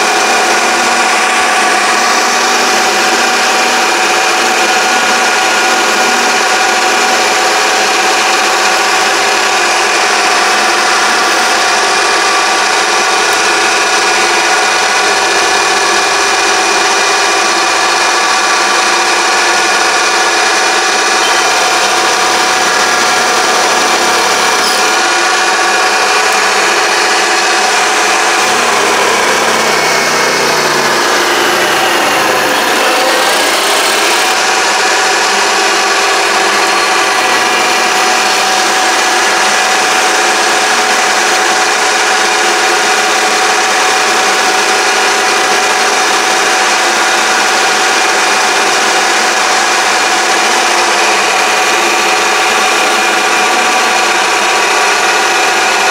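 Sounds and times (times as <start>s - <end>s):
rushing noise: 0.0s - 14.7s, 17.8s - 42.2s
lathe whining: 0.0s - 55.9s.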